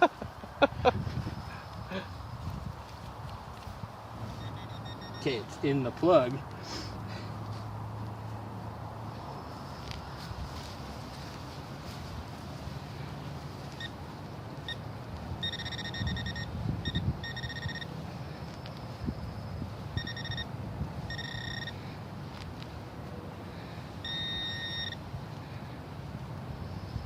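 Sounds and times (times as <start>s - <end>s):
metal detector pinpointer beeping: 4.2s - 5.5s, 13.8s - 14.0s, 15.4s - 18.0s, 20.0s - 20.5s, 21.1s - 21.8s, 24.0s - 25.0s.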